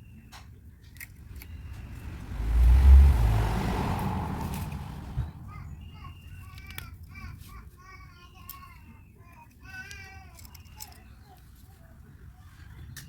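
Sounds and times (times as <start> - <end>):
vehicle passing by: 1.0 - 6.8.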